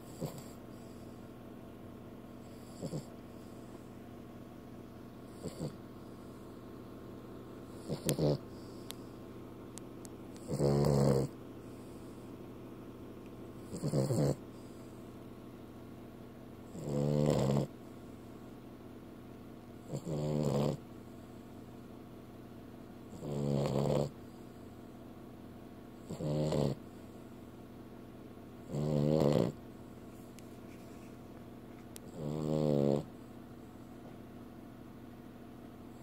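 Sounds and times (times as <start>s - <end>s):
dog snoring: 0.0s - 1.3s, 2.4s - 4.0s, 5.2s - 6.6s, 7.7s - 9.2s, 10.3s - 12.3s, 13.6s - 15.2s, 16.6s - 18.2s, 19.8s - 21.5s, 23.0s - 24.9s, 26.0s - 27.3s, 28.6s - 29.9s, 32.0s - 33.3s.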